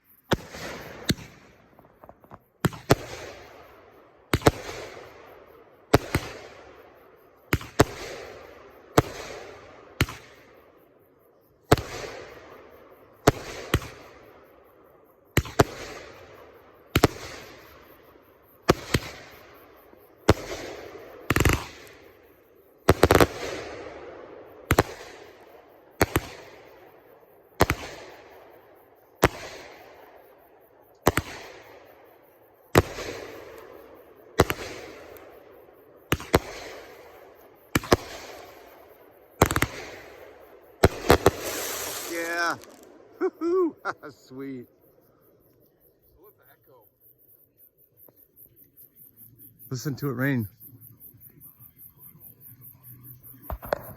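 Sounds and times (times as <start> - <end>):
fireworks banging and crackling: 0.3 - 3.7, 4.3 - 6.8, 7.5 - 10.6, 11.7 - 14.2, 15.4 - 17.8, 18.6 - 19.5, 20.2 - 22.2, 22.9 - 27.0, 27.6 - 28.4, 29.2 - 30.1, 31.0 - 31.8, 32.7 - 35.4, 36.1 - 44.6, 53.5 - 53.9.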